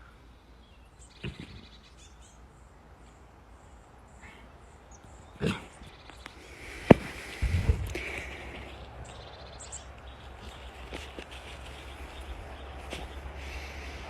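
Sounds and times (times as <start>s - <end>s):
low steady background noise: 0.0s - 14.0s
heavy breathing: 5.4s - 9.3s, 10.3s - 14.0s.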